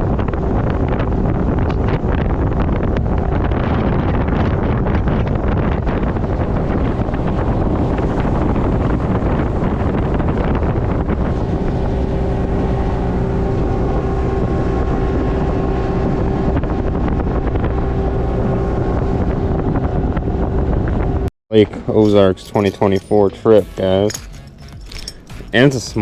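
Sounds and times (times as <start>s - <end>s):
boat motor running: 0.0s - 26.0s
wind buffeting microphone: 0.0s - 26.0s.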